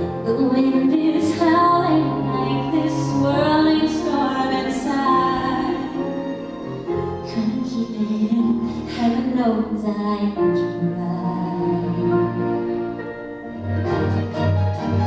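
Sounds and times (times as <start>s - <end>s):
instrumental accompaniment: 0.0s - 9.4s, 10.4s - 15.0s
woman singing a slow ballad: 0.2s - 6.0s, 7.3s - 12.2s.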